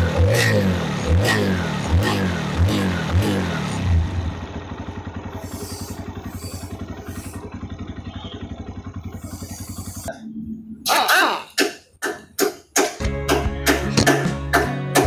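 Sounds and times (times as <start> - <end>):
motorcycle engine idling: 0.6 - 10.4.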